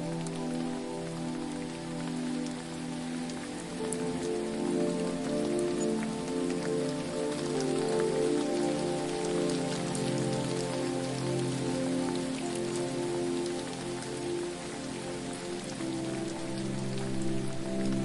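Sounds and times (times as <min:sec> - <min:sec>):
falling water hissing: 0:00.0 - 0:18.0.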